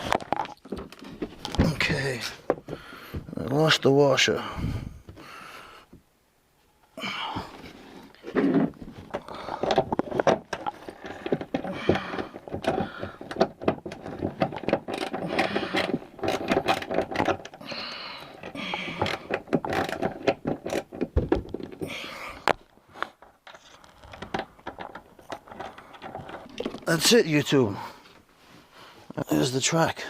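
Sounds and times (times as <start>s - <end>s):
bolt and nut rattling: 8.2s - 21.8s, 23.2s - 27.4s.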